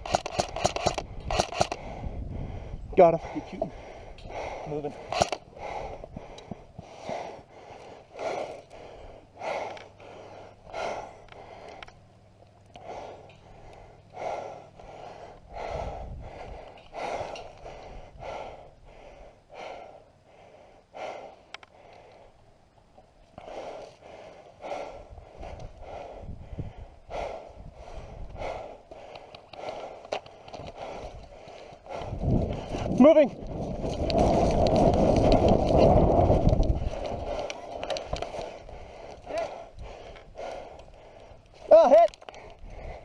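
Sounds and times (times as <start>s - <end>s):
person breathing hard: 0.1s - 12.0s, 12.7s - 22.4s, 23.4s - 43.0s.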